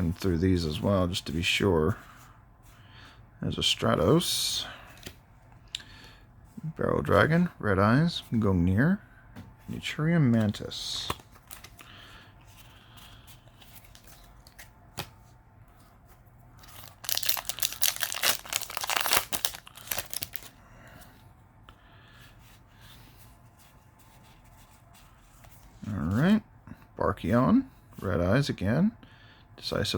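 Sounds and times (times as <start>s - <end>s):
foil pack tearing and crinkling: 16.7s - 20.5s.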